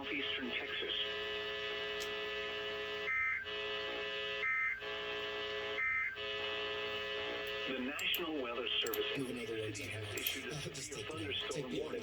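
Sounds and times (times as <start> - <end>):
steady receiver hum: 0.0 - 12.0.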